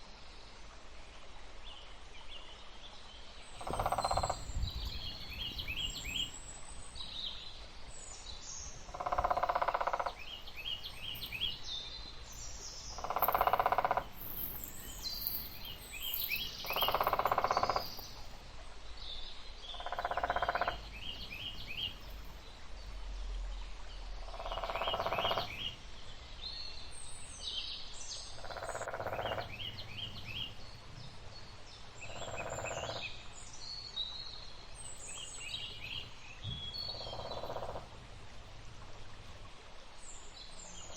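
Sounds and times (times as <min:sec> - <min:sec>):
small birds chirping: 0:03.6 - 0:18.4, 0:19.7 - 0:23.0.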